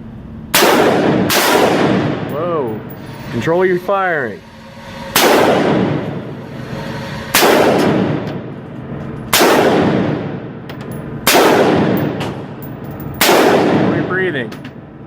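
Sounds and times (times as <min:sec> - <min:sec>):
rifle shots with echo: 0:00.5 - 0:02.3, 0:05.2 - 0:06.0, 0:07.3 - 0:08.2, 0:09.3 - 0:10.6, 0:11.2 - 0:12.6, 0:13.2 - 0:14.3.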